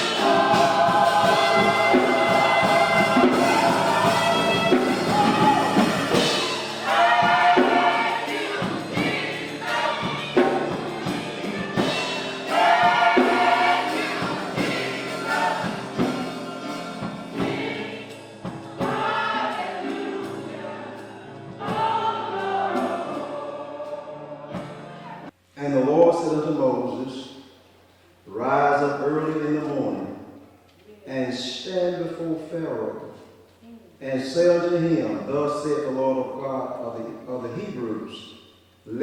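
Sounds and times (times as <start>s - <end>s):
gospel choir singing: 0.0s - 25.4s.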